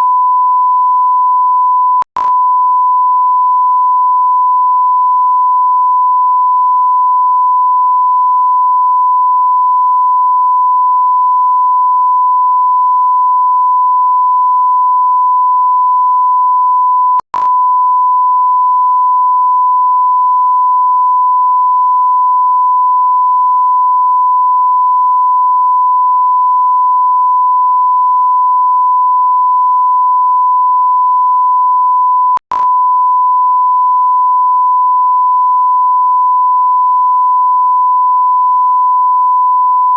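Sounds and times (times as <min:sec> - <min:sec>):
click: 0:02.0 - 0:02.4, 0:17.2 - 0:17.6, 0:32.3 - 0:32.8.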